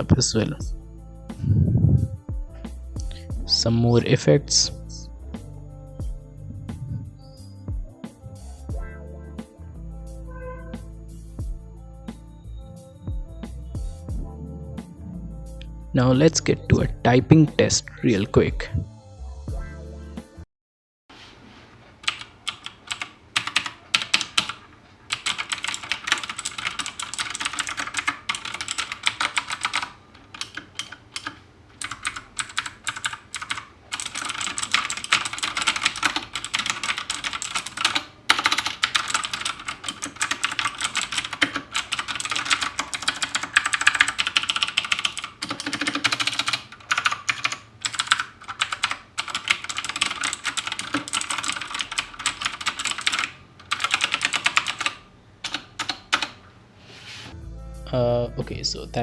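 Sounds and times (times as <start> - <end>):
clicky mechanical keyboard typing: 22.0 - 56.4.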